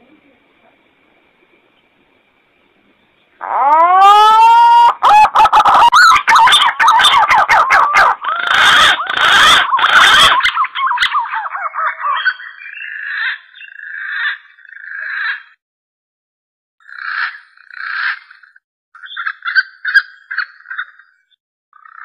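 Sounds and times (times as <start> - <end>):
warbling whistled bird call: 3.2 - 15.6.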